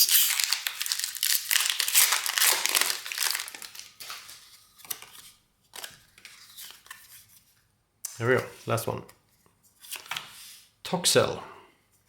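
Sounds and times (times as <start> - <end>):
foil wrapper tearing and crinkling: 0.0 - 4.3.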